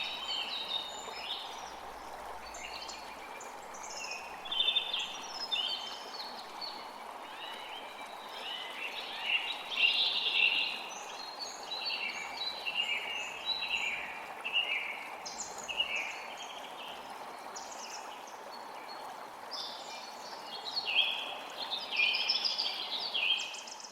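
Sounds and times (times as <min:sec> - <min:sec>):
rushing forest background noise: 0:00.0 - 0:23.9.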